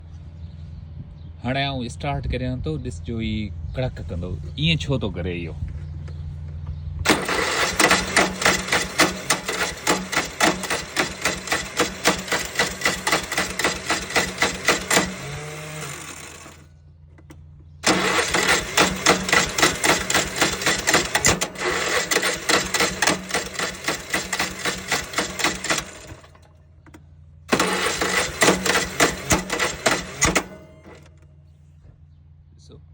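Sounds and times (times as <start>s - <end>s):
mower starter cranking engine: 7.1s - 31.4s.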